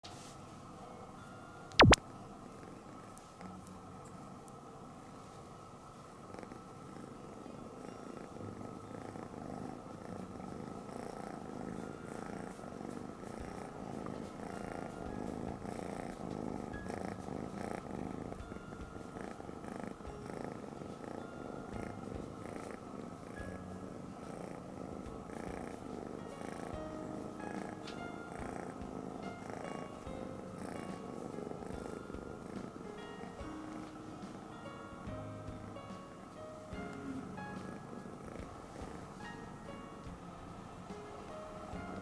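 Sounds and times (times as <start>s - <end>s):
kitten purring: 1.7s - 42.0s.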